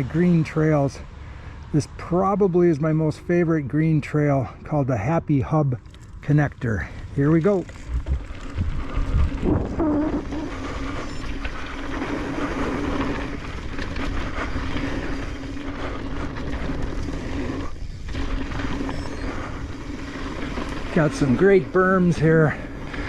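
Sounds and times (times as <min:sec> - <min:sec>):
bike tyres rumbling on dirt: 0:00.0 - 0:23.0
wind on microphone: 0:07.8 - 0:19.9.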